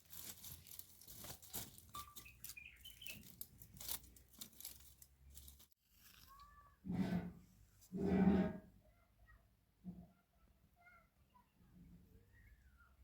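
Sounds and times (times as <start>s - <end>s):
faint crackles and clicks: 0.0s - 6.6s
faint bird chirps: 1.9s - 3.3s, 10.8s - 13.0s.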